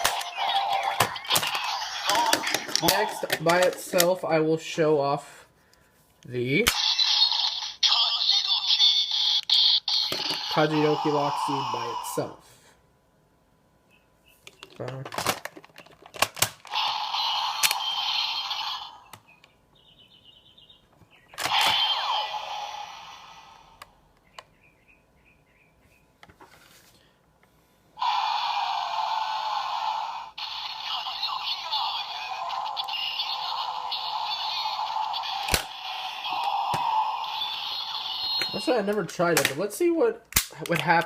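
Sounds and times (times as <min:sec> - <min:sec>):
toy belt electronic sound effects: 0:00.0 - 0:04.1, 0:06.7 - 0:12.4, 0:16.7 - 0:19.2, 0:21.4 - 0:23.8, 0:28.0 - 0:39.4
sharp plastic clicks: 0:14.5 - 0:16.7, 0:40.3 - 0:41.0.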